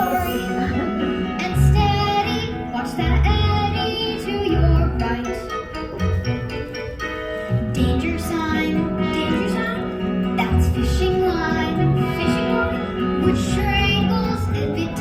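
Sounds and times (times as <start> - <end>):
young voice singing: 0.0 - 5.4
musical accompaniment: 0.0 - 15.0.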